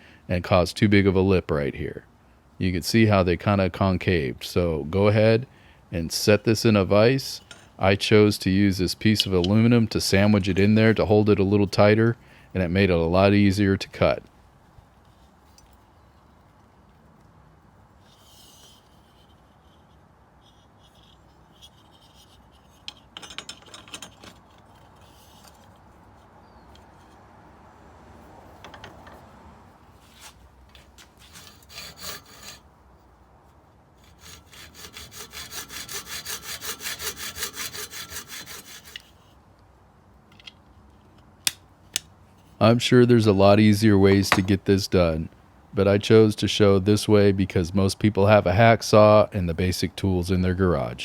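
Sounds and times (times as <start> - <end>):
hacksaw cutting brass: 31.2 - 32.6, 34.0 - 39.2, 44.1 - 44.5.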